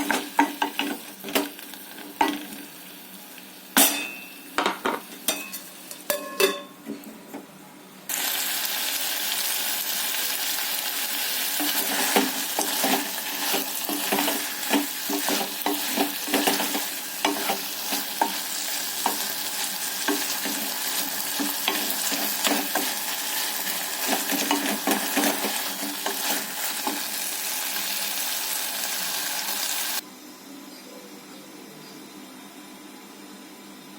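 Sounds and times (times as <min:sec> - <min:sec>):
pumpkin sizzling in a pan: 0:08.1 - 0:30.0.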